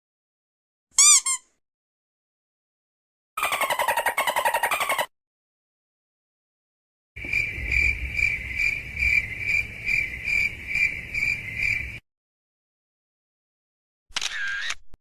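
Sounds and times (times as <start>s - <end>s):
crickets chirping: 7.2s - 12.0s.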